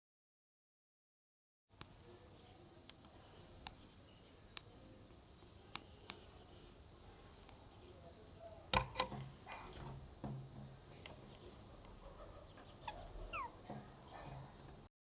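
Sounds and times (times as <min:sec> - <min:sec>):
faint bird calls: 0:11.5 - 0:14.9
falling bird chirp: 0:12.2 - 0:14.8.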